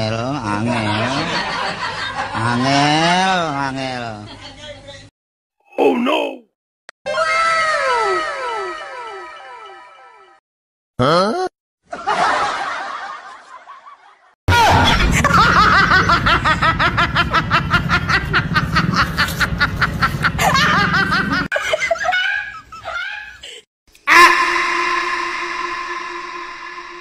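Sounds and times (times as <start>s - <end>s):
snickering laughter: 0.6s - 2.8s, 15.0s - 23.6s
ringing musical tone: 24.4s - 27.0s.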